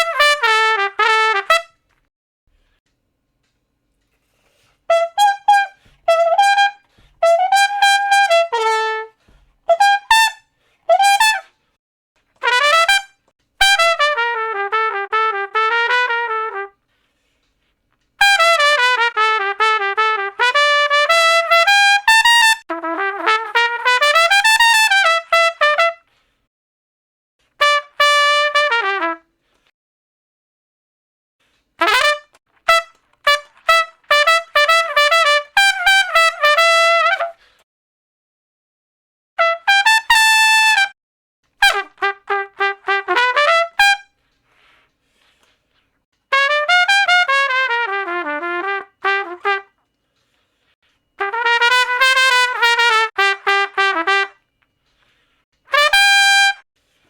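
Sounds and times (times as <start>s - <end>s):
trumpet playing: 0.0s - 1.9s, 4.8s - 11.5s, 12.4s - 16.8s, 18.2s - 26.1s, 27.6s - 29.3s, 31.8s - 37.5s, 39.4s - 41.0s, 41.6s - 44.7s, 46.3s - 49.8s, 51.2s - 54.4s, 55.7s - 56.6s.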